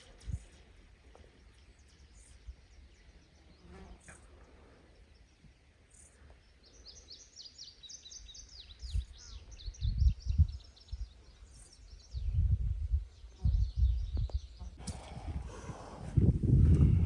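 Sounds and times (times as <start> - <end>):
songbird twittering song: 0.0 - 15.4.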